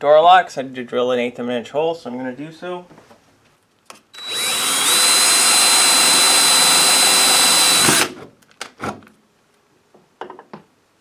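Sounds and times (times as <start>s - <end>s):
power drill whining: 4.2s - 8.2s.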